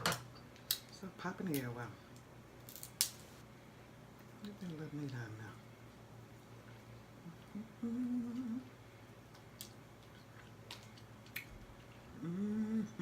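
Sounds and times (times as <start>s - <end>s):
woman humming mmm: 7.2s - 8.8s, 12.1s - 13.0s.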